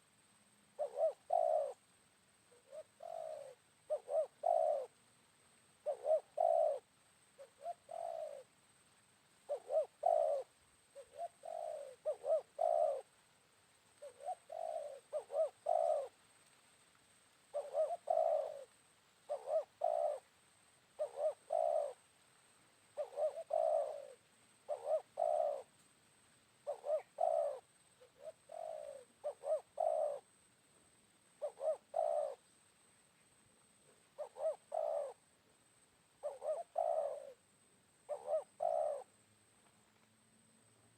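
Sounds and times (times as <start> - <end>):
dove cooing: 0.7 - 5.0, 5.8 - 8.6, 9.4 - 13.2, 14.0 - 16.2, 17.5 - 22.1, 22.9 - 25.8, 26.6 - 30.3, 31.3 - 32.5, 33.8 - 35.4, 36.2 - 37.4, 38.0 - 39.2.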